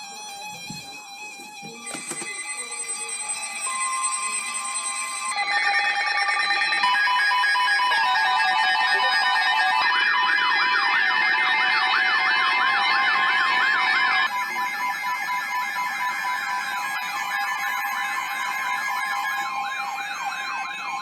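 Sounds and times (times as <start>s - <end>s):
rapid beeps: 2.0s - 21.0s
siren-like sweeping tone: 5.0s - 21.0s.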